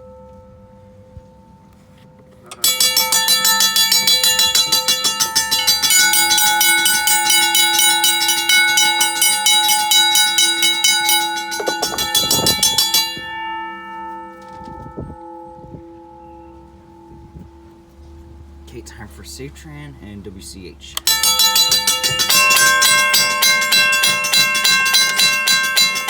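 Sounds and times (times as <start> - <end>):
railroad crossing bells ringing: 0.0 - 26.0
low knocks: 10.7 - 18.7.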